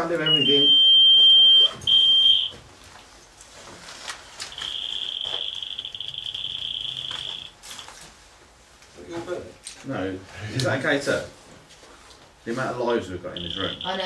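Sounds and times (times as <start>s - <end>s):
buzzy high alarm tone: 0.0s - 2.6s, 4.5s - 7.6s, 13.3s - 14.0s
high electronic beep: 0.2s - 2.6s, 4.5s - 7.5s, 13.4s - 14.0s.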